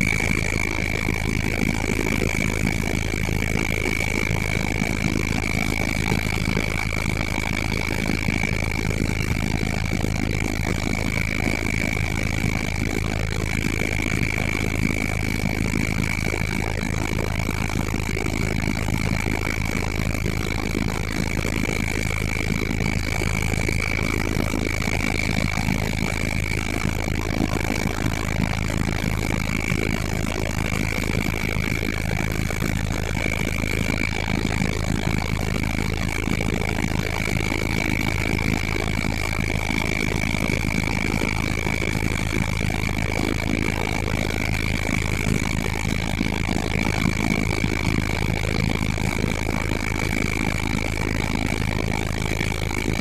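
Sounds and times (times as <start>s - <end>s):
high whine: 0.0s - 51.6s
helicopter drone: 0.0s - 53.0s.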